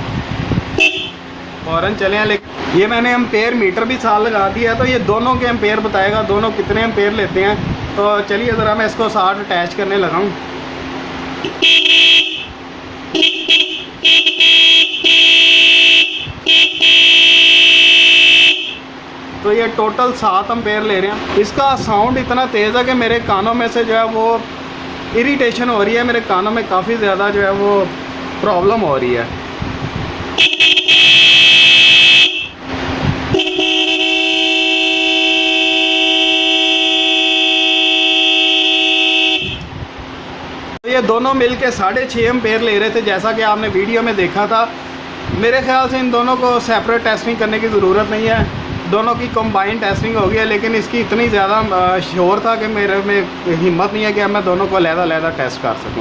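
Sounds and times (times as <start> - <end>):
two-tone car horn blasts: 0.8 - 1.2, 11.4 - 18.9, 30.4 - 32.6, 33.3 - 39.7.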